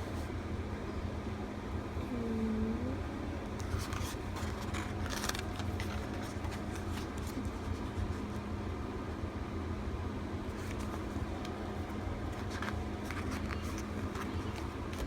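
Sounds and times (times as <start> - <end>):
low background hum: 0.0 - 15.0
photo cards rustling and clicking: 3.5 - 8.7, 10.4 - 15.0.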